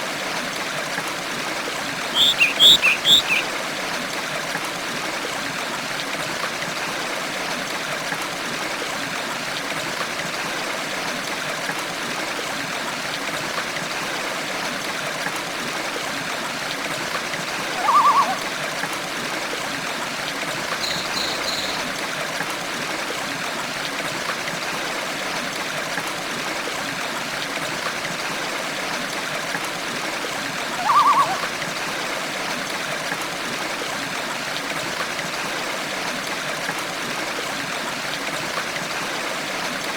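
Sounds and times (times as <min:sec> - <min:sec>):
stream running water: 0:00.0 - 0:39.9
faint high chirp: 0:02.1 - 0:03.5, 0:20.8 - 0:21.9, 0:30.8 - 0:31.4
short bird call: 0:02.1 - 0:03.5, 0:17.7 - 0:18.5, 0:20.8 - 0:21.9, 0:30.8 - 0:31.5.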